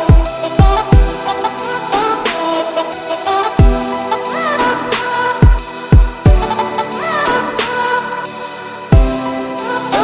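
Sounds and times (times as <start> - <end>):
lofi hip-hop music: 0.0 - 10.0
deep kick drum: 0.1 - 1.2, 3.6 - 3.8, 5.4 - 6.5, 8.9 - 9.2.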